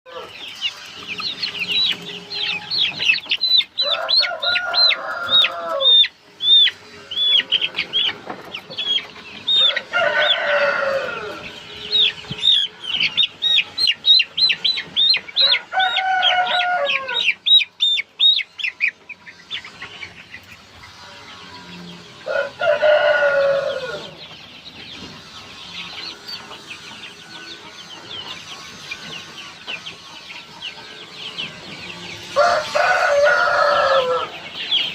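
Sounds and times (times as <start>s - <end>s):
chicks peeping: 0.1s - 34.9s
rooster crowing: 3.8s - 6.1s, 9.5s - 11.6s, 15.4s - 17.3s, 22.2s - 24.2s, 32.3s - 34.4s.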